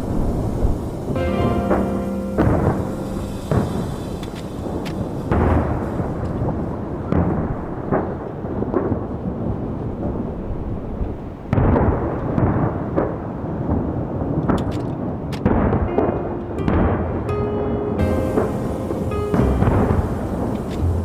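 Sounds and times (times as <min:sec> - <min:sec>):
sharp firework cracks: 0:00.0 - 0:08.2
firework booms with rolling rumble: 0:02.4 - 0:10.2, 0:11.5 - 0:14.3.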